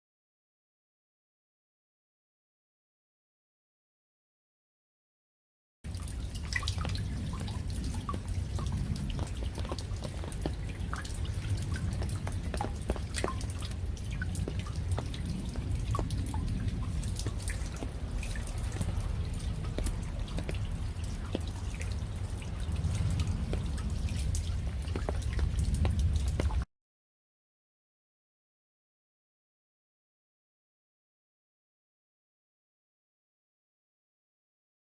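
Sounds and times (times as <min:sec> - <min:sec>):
raindrops dripping: 0:05.9 - 0:26.7
steady low rumble: 0:05.9 - 0:26.7.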